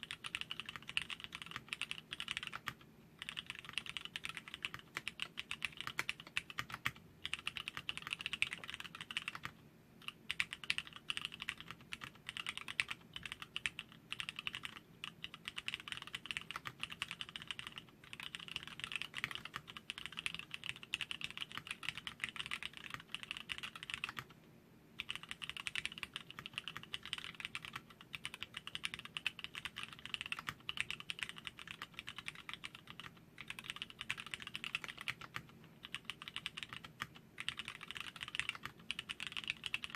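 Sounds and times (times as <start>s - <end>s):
fast typing on mechanical keyboard: 0.0s - 24.3s, 25.0s - 39.9s.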